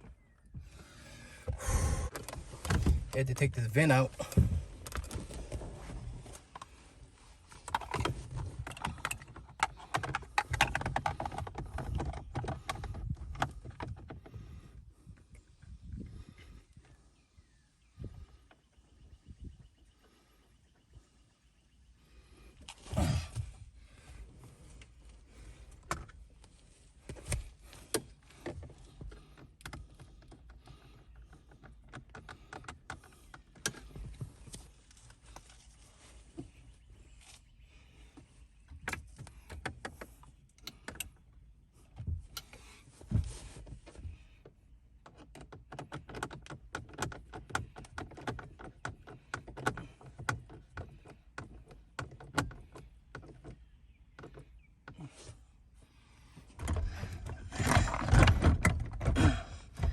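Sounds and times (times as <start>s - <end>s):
hands and tools clicking and knocking: 7.6s - 14.4s, 45.0s - 55.0s.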